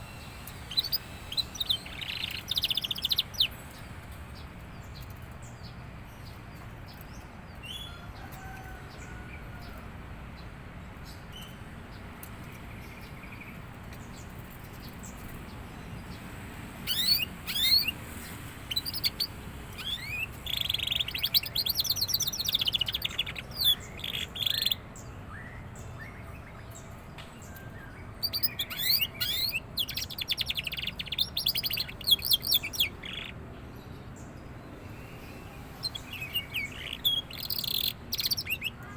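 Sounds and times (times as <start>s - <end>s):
canary trilling and chirping: 0.0s - 4.0s, 16.8s - 24.8s, 28.2s - 33.4s, 35.1s - 38.8s.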